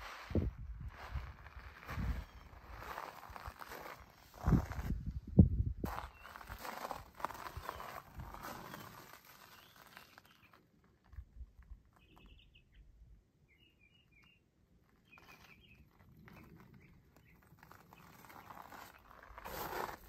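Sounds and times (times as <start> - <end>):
small bird chirping: 7.5 - 10.6, 11.9 - 19.2.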